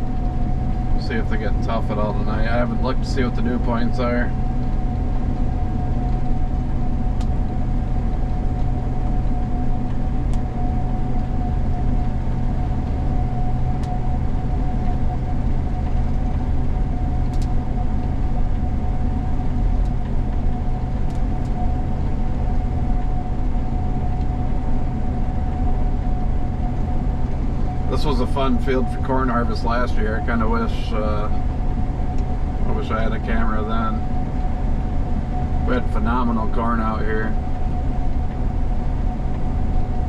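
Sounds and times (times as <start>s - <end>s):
combine harvester droning: 0.0s - 40.0s
mid-pitched machine whine: 0.0s - 40.0s
faint clicks: 17.3s - 17.5s.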